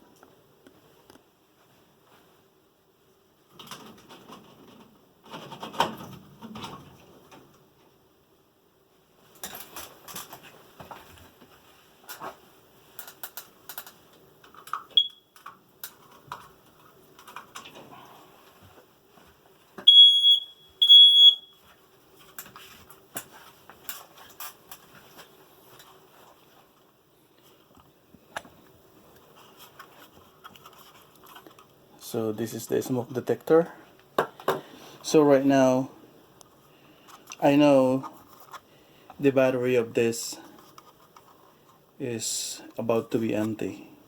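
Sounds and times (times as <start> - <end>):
smoke detector loud beeps: 15.0 - 15.3, 19.9 - 21.6
smoke detector chirp: 19.9 - 21.6.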